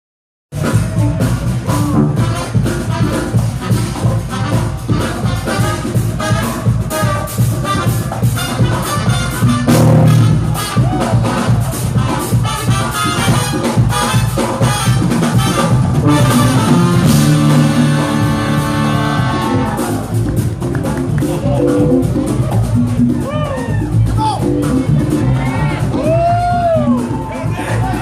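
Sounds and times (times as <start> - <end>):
brass: 0.5 - 22.4
drum kit beat: 0.5 - 28.0
keyboard: 12.4 - 28.0.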